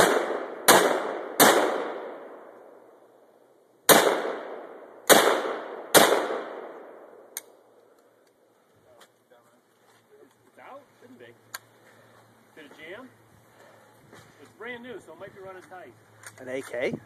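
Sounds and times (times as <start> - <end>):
rifle shots echoing: 0.0 - 2.7, 3.9 - 7.4.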